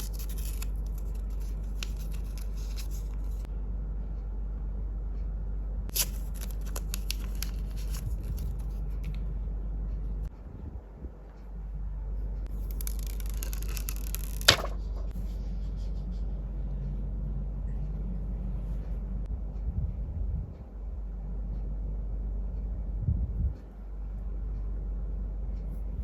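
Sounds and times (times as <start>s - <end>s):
soft handling sounds: 0.0s - 3.5s
steady low hum: 0.0s - 26.0s.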